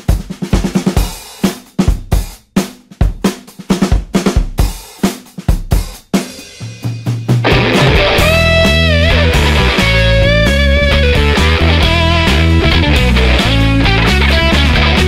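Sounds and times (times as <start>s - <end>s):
drum kit beat: 0.0s - 15.0s
low bass note: 7.5s - 15.0s.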